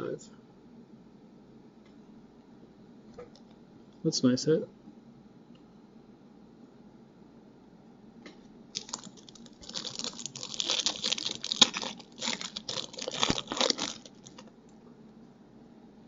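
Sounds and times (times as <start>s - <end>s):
cards rustling: 8.8s - 14.5s
foil wrapper tearing and crinkling: 8.8s - 14.5s.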